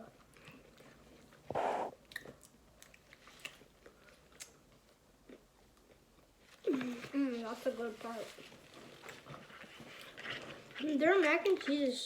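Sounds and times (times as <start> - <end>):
short noisy sound: 1.5 - 1.9.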